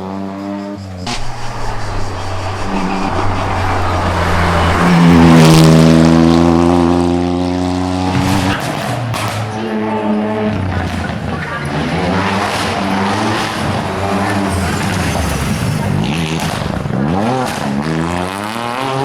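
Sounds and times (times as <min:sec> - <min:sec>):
rally car engine revving: 0:01.1 - 0:19.0.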